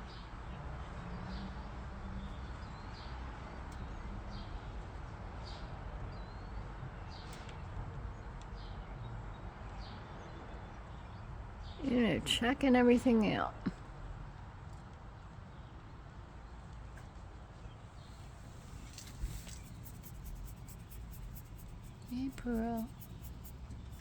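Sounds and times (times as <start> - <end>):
small bird chirping: 18.0 - 24.0.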